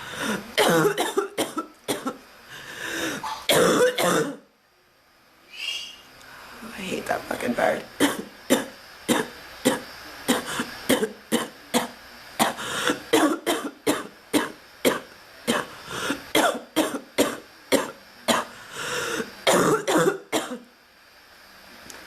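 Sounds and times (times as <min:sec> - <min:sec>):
person coughing: 0:00.2 - 0:02.2, 0:03.1 - 0:04.4, 0:08.0 - 0:15.7, 0:16.4 - 0:18.5, 0:19.2 - 0:20.6.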